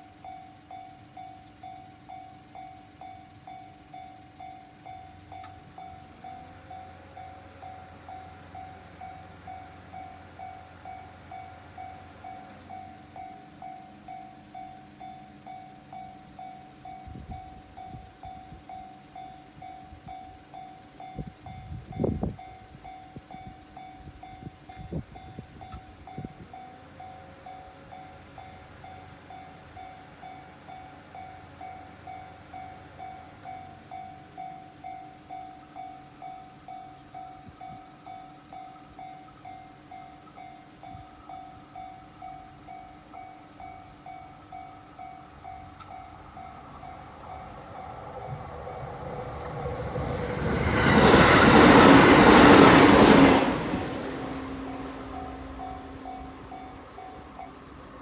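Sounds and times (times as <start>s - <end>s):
level crossing alarm dinging: 0.0s - 58.0s
train wheels knocking on rail joints: 45.8s - 57.4s.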